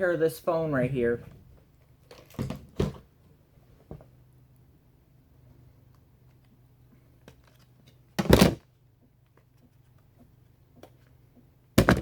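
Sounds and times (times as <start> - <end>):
thuds of objects handled: 8.2 - 8.6, 11.8 - 12.0.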